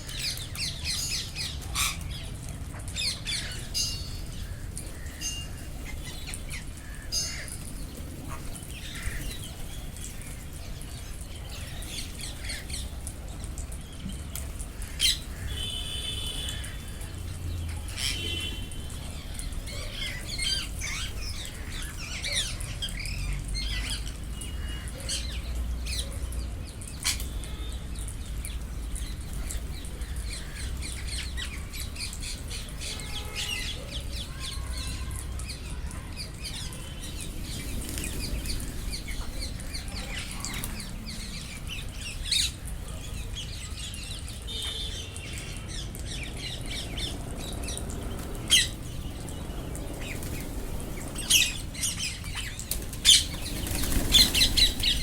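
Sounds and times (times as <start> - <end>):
parrots squawking and chirping: 0.2 - 10.4, 48.5 - 48.8, 50.0 - 55.0.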